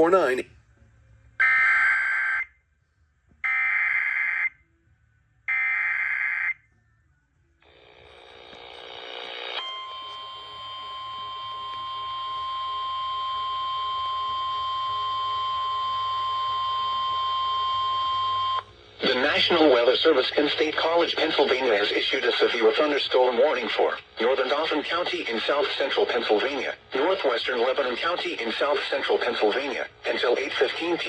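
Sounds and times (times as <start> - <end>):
weather radio alarm tone: 1.4 - 2.5, 9.6 - 20.2.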